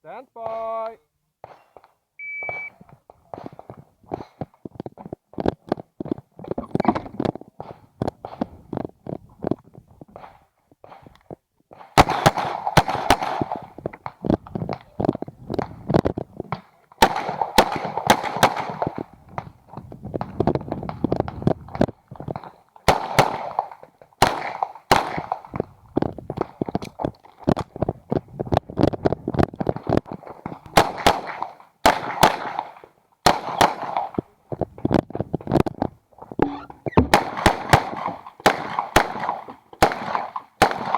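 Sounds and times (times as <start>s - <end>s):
ringing gunshot echo: 36.4s - 39.3s.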